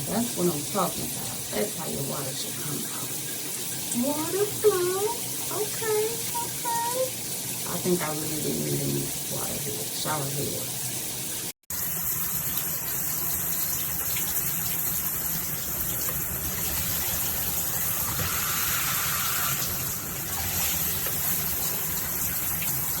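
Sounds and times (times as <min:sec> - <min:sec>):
shower head spraying water: 0:12.1 - 0:23.0.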